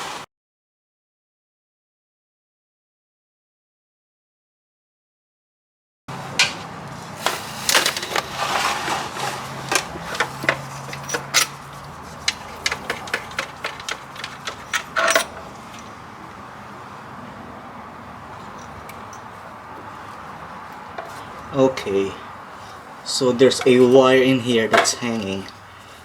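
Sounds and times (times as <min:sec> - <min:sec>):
metallic clatter: 0:06.3 - 0:16.0
tools and bolts clinking: 0:06.3 - 0:16.5, 0:18.3 - 0:22.0, 0:23.4 - 0:24.1, 0:24.7 - 0:25.7.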